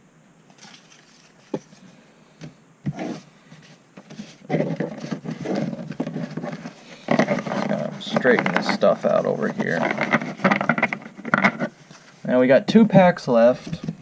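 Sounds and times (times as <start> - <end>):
cards and packaging rustling: 0.5 - 1.9, 2.9 - 12.3.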